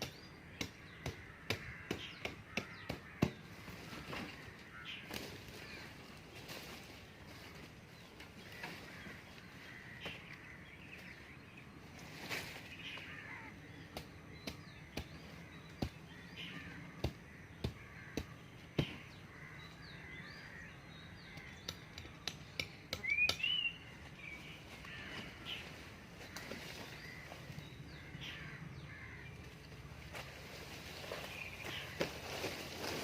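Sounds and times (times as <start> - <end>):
birds chirping: 0.0 - 33.0
sharp taps and clicks: 21.3 - 23.4.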